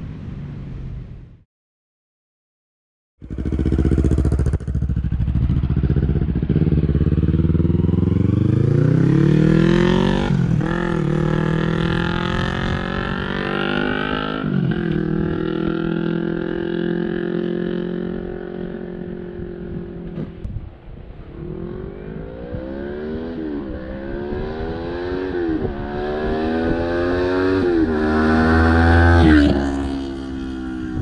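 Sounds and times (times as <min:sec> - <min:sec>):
motorcycle engine accelerating: 0:03.2 - 0:20.5, 0:21.4 - 0:31.0.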